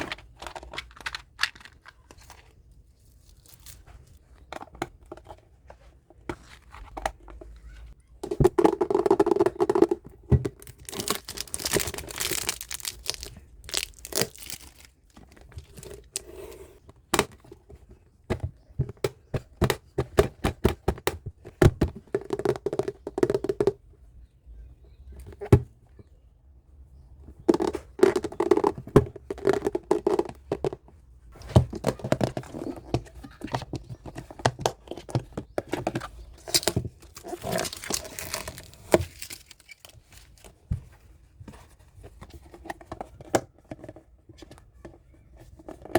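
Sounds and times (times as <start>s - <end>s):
clicks and knocks of handling: 0.0s - 2.6s, 3.4s - 23.8s, 27.4s - 45.9s
plastic packaging crinkling and tearing: 3.0s - 4.2s, 10.6s - 16.2s, 36.4s - 40.5s.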